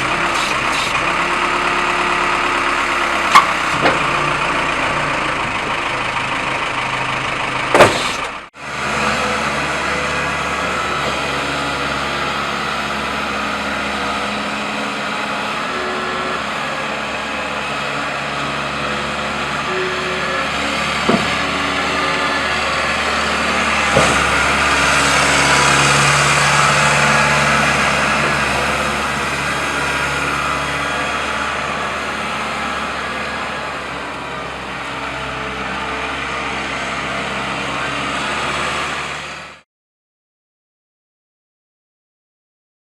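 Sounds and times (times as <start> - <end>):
diesel engine running: 0.0 - 39.6
sharp knocks: 7.7 - 8.4.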